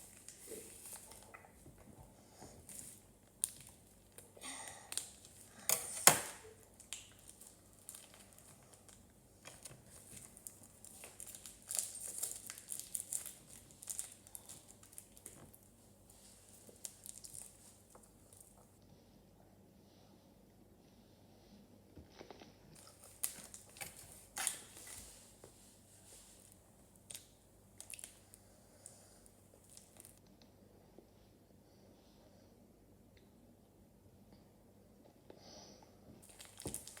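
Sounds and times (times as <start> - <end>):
crinkling and rustling: 0.0 - 18.8, 22.0 - 30.3, 36.2 - 37.0.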